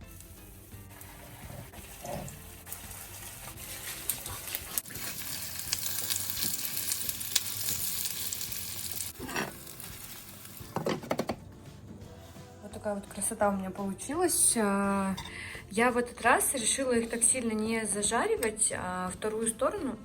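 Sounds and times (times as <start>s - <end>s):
pancakes sizzling in oil: 0.1s - 10.7s.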